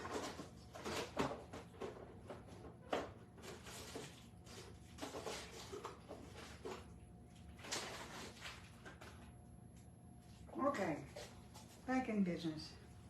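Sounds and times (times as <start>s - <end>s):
objects rustling and knocking: 0.0s - 9.4s
low steady hum: 0.0s - 13.0s.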